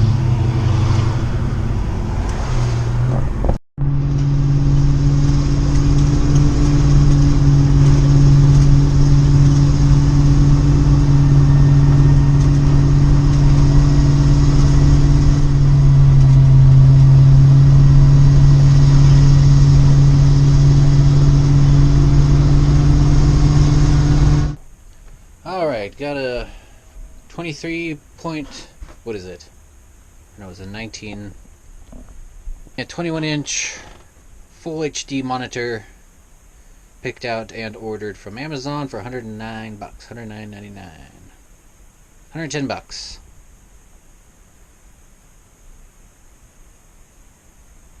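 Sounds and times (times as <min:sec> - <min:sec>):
vehicle engine drone: 0:00.0 - 0:24.7
road noise: 0:00.0 - 0:34.7.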